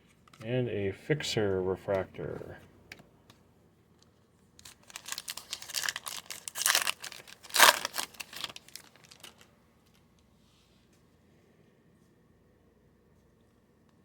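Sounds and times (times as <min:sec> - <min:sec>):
foil wrapper crinkling and tearing: 0:04.6 - 0:10.0.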